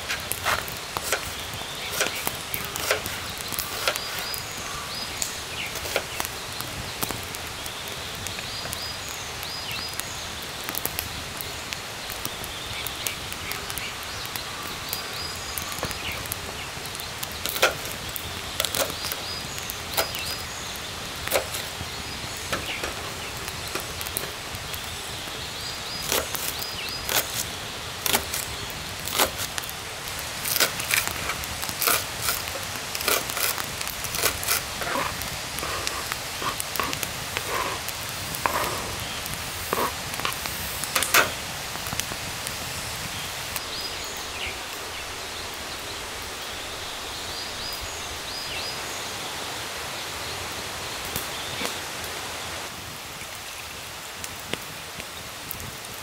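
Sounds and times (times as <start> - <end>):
wood cracking and snapping: 0.0 - 42.6
forest background: 0.0 - 56.0.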